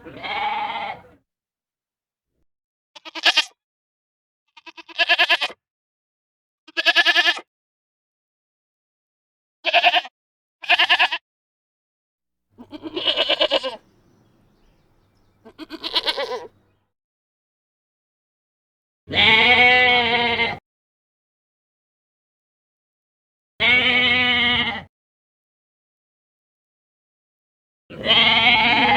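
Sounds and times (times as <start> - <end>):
goats bleating: 0.0 - 1.2, 3.0 - 3.4, 4.6 - 5.6, 9.7 - 11.2, 12.6 - 16.7, 19.1 - 20.6, 23.6 - 24.9, 27.9 - 28.9.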